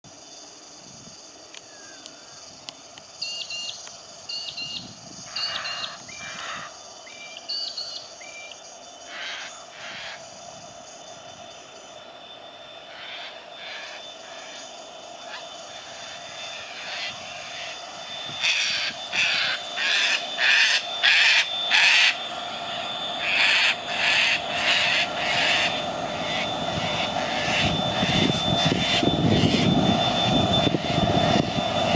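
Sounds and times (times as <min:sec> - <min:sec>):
steady background hum: 0:00.1 - 0:31.9
harsh bird calls: 0:04.4 - 0:10.4, 0:12.9 - 0:29.7
crow cawing: 0:18.4 - 0:22.2, 0:23.2 - 0:26.4.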